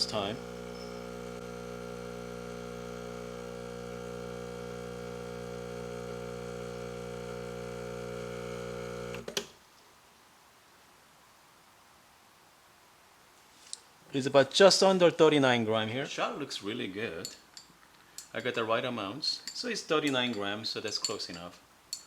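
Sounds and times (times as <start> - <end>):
espresso machine pump humming: 0.0 - 9.3.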